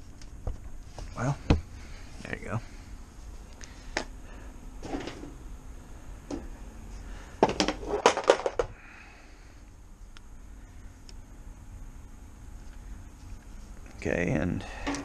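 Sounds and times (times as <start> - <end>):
hard plastic parts clattering: 7.4 - 8.7.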